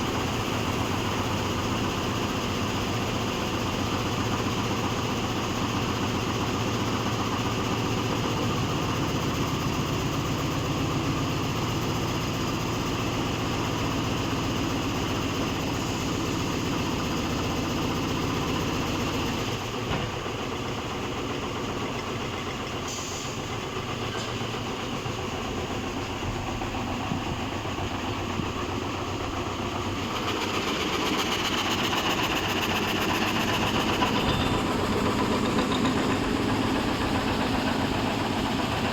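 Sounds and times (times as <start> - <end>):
frame saw machine clattering: 30.1 - 38.9.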